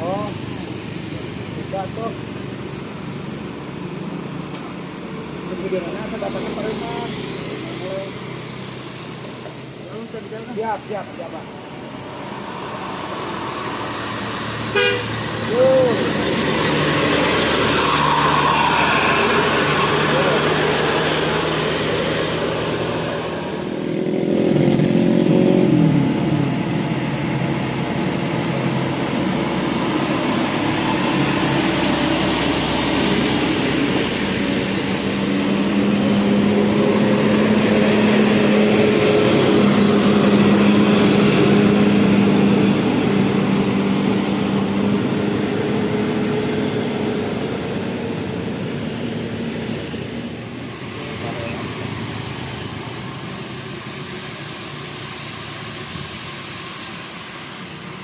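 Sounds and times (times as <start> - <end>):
bus diesel engines: 0.0 - 58.0.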